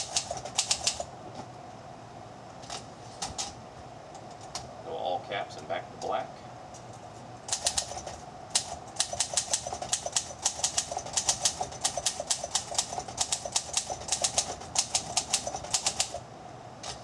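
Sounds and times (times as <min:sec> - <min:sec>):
manual typewriter typing: 0:00.0 - 0:01.1, 0:07.5 - 0:16.2.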